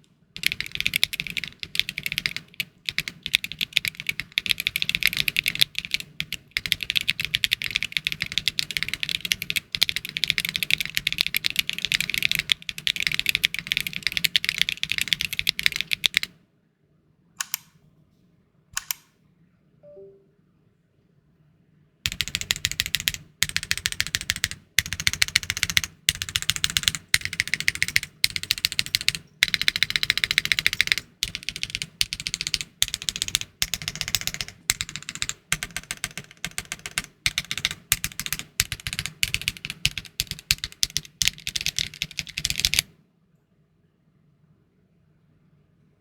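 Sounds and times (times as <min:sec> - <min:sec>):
typing on mechanical keyboard: 0:00.4 - 0:16.3, 0:22.1 - 0:42.9.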